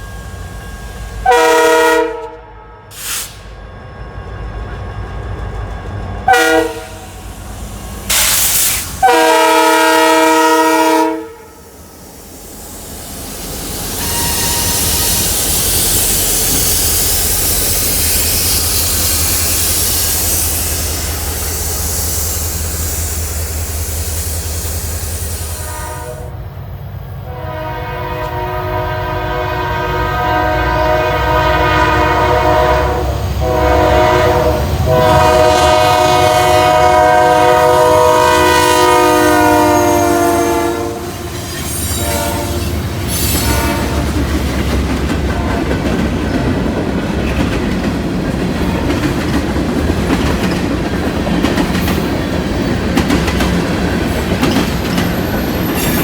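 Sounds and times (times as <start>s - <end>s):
train rumble and wheel clatter: 0.0s - 56.0s
locomotive air horn blasts: 1.2s - 3.4s, 6.3s - 7.2s, 8.1s - 11.7s, 14.0s - 15.3s, 25.3s - 26.4s, 27.2s - 44.2s.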